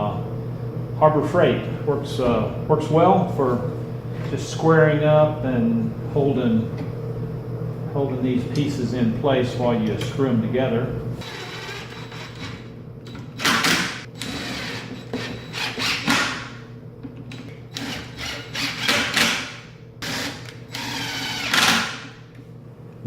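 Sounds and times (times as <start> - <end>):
cordless drill motor whine: 11.2 - 12.6, 14.2 - 16.1, 17.7 - 19.2, 20.0 - 21.9.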